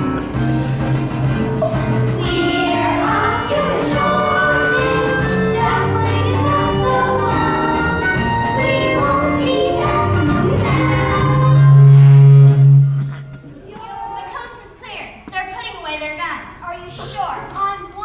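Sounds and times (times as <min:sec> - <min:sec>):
instrumental accompaniment: 0:00.0 - 0:14.3
young voices singing: 0:02.2 - 0:12.5.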